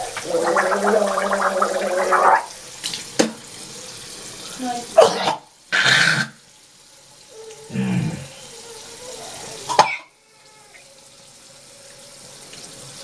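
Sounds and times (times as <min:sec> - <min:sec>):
tap water running into sink: 0:00.0 - 0:13.0
person coughing: 0:05.0 - 0:06.3, 0:09.7 - 0:10.1.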